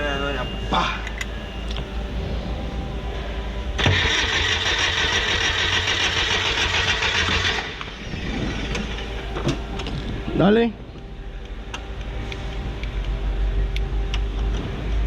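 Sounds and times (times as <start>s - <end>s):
starter motor cranking engine: 3.8s - 7.9s.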